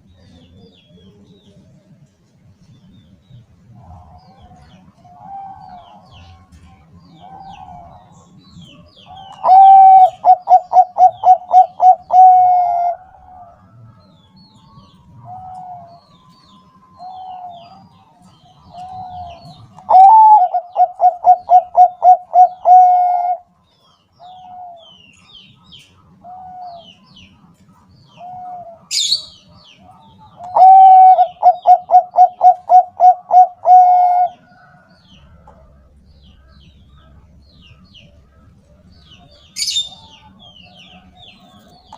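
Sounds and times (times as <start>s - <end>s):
dove cooing: 3.8s - 6.6s, 7.2s - 14.0s, 14.9s - 16.4s, 17.0s - 23.5s, 24.2s - 27.0s, 27.8s - 37.3s.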